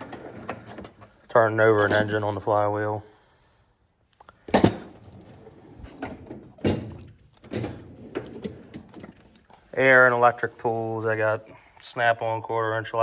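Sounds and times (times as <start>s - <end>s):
drawers and tools rattling: 0.0s - 2.2s, 4.5s - 9.6s
metal drawer shutting: 4.5s - 9.3s.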